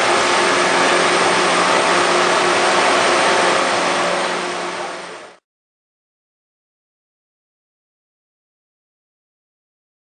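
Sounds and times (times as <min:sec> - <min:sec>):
milling machine whirring: 0:00.0 - 0:05.4.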